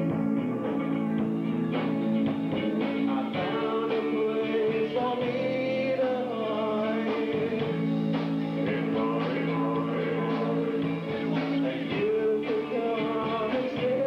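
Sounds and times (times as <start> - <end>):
person singing: 0.0 - 14.0
rock band playing live: 0.0 - 14.0.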